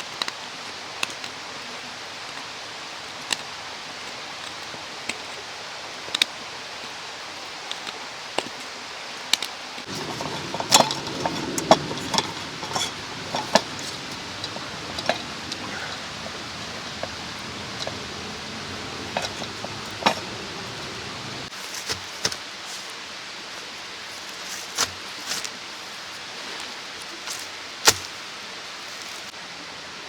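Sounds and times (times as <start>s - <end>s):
mountain stream rushing: 9.8s - 30.0s.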